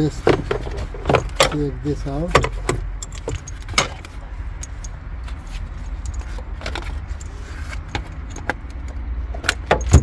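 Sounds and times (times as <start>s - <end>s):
seat belt metal clinks: 0.0s - 10.0s.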